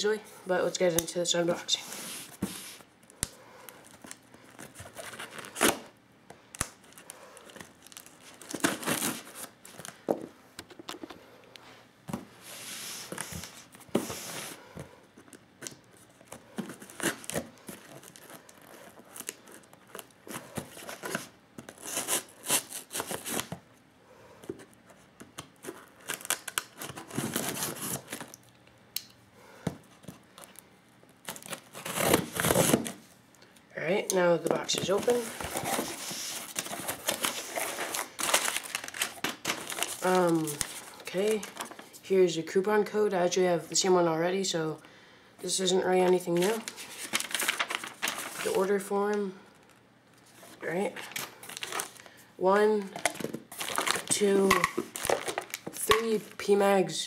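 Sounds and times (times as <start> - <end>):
scraping and crinkling: 34.2 - 42.0, 46.1 - 48.9, 52.8 - 56.4.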